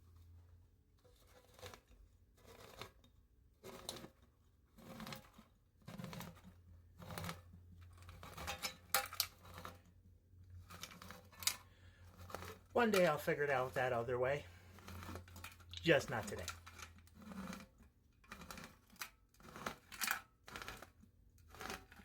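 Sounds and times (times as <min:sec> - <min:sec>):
can opener cutting metal lid: 0:08.0 - 0:09.9, 0:10.7 - 0:13.2, 0:14.7 - 0:22.0.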